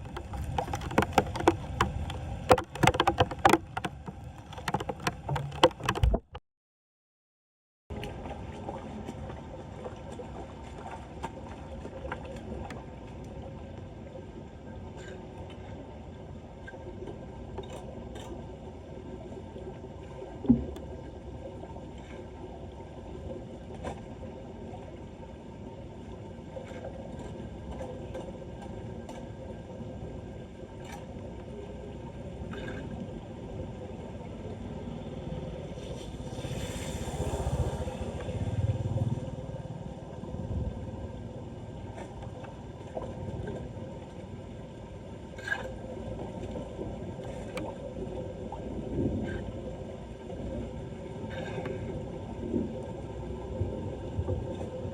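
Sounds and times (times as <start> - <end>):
floodwater gurgling down storm drain: 0.0 - 6.4, 30.8 - 54.9
water sloshing: 0.0 - 6.4.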